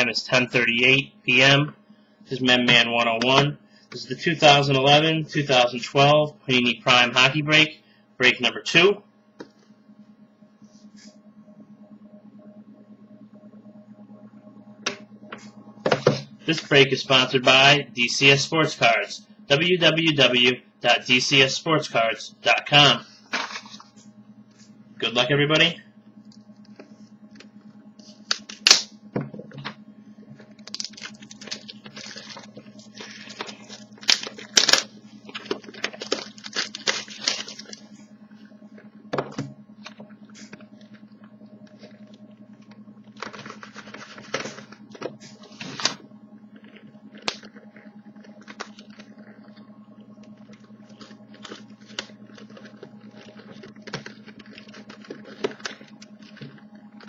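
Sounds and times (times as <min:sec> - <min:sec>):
faint steady hum: 0:00.0 - 0:57.0
plastic wrapping tearing and crinkling: 0:30.6 - 0:37.9, 0:50.9 - 0:57.0.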